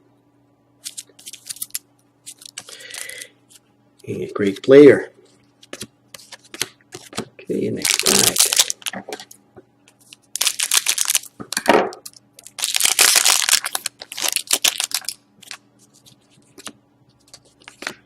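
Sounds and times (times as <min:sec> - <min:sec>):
cards clicking and rustling: 0:00.8 - 0:03.2, 0:05.6 - 0:11.3, 0:12.0 - 0:18.0
foil card pack tearing: 0:07.7 - 0:09.2, 0:10.1 - 0:11.3, 0:12.0 - 0:15.6.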